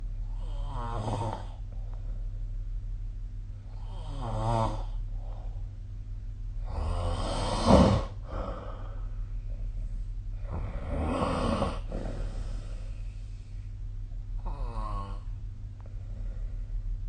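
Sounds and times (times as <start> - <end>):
steady low hum: 0.0 - 17.0
person snoring: 0.4 - 1.6, 3.8 - 5.4, 6.6 - 9.1, 10.4 - 13.5, 14.4 - 15.4.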